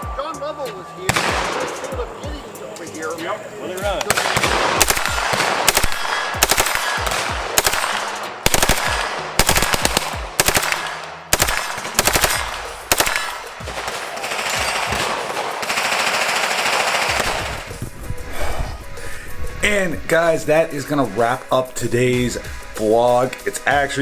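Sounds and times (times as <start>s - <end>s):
steady rushing noise: 0.0s - 23.1s
rapid gunshots: 1.1s - 2.2s, 4.0s - 17.8s.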